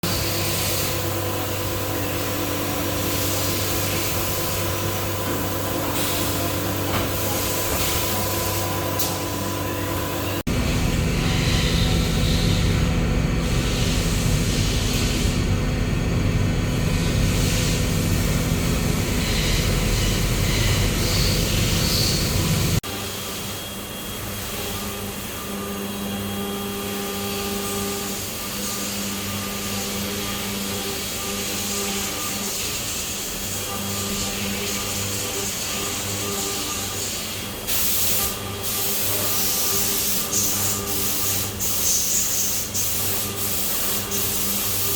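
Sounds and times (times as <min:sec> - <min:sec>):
machine humming: 0:00.0 - 0:32.2.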